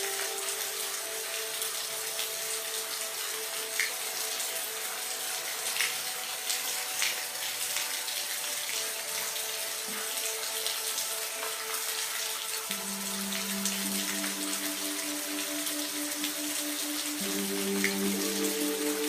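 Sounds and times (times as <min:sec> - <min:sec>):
raindrops ticking close by: 0:00.0 - 0:19.0
steady rain falling: 0:00.0 - 0:19.0.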